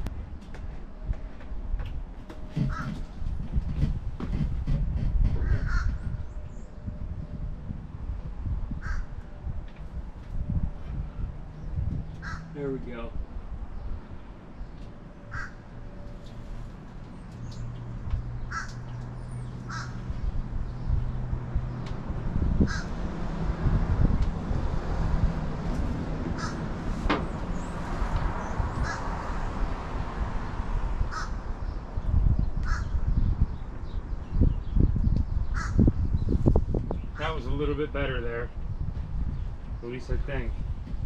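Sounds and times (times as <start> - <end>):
low rumbling and handling noise: 0.0 - 29.5, 34.8 - 41.0
crow cawing: 2.7 - 3.0, 5.5 - 6.0, 8.8 - 9.1, 12.2 - 12.5, 15.3 - 15.6, 18.5 - 18.8, 19.7 - 20.0, 22.7 - 22.9, 26.4 - 26.6, 28.8 - 29.1, 31.1 - 31.4, 32.6 - 32.9, 35.6 - 35.8.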